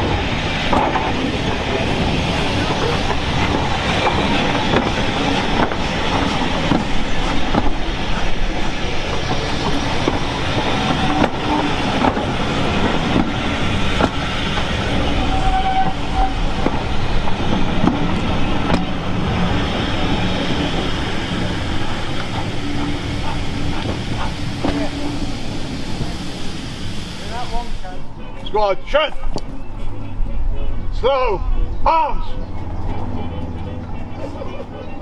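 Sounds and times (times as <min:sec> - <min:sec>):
train rumbling along track: 0:00.0 - 0:35.0.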